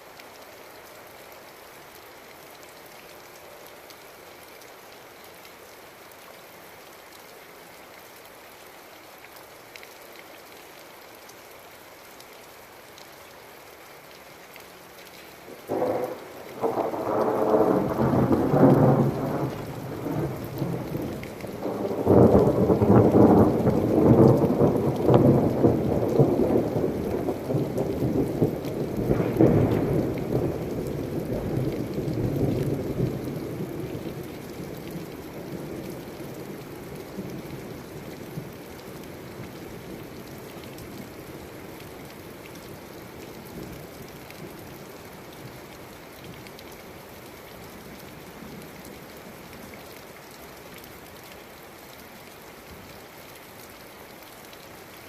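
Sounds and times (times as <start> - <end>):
heavy rain: 0.0 - 55.0
thunder rumbling: 15.6 - 38.6.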